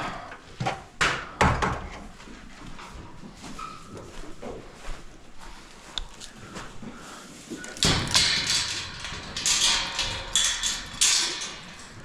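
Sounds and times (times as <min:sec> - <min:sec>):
barn door scraping and clattering: 0:07.6 - 0:12.0
sharp bangs: 0:07.7 - 0:12.0.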